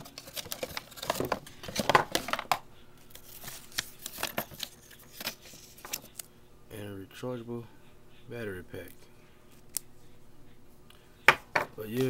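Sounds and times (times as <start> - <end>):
plastic packaging clicks and rustles: 0.0 - 6.3.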